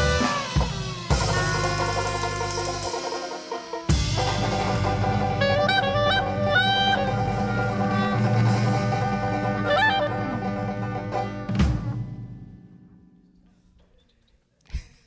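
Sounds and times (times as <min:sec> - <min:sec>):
horn playing melodic runs: 0:00.0 - 0:11.5
jazz band playing live: 0:00.0 - 0:12.4.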